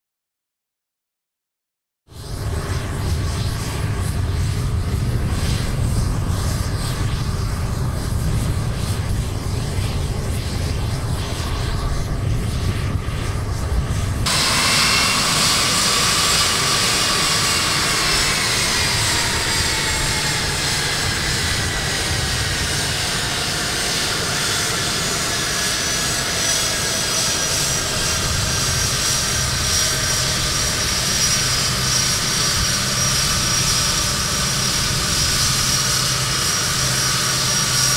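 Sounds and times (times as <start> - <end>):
jet engine rumble: 2.1 - 37.9
jet engine whine: 2.1 - 37.9.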